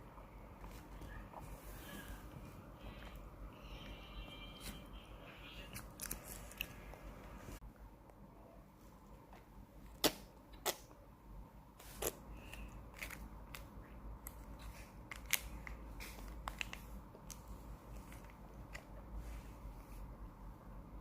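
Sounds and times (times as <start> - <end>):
candy being chewed: 5.6 - 7.0.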